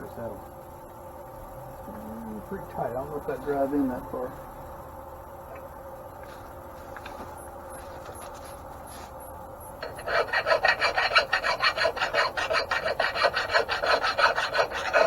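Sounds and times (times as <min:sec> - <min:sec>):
hand file rasping on metal: 0:09.8 - 0:15.0.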